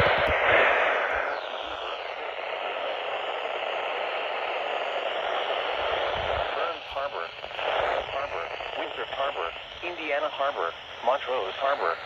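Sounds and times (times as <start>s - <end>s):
radio static hiss: 0.0s - 12.0s
person speaking over radio: 5.8s - 12.0s.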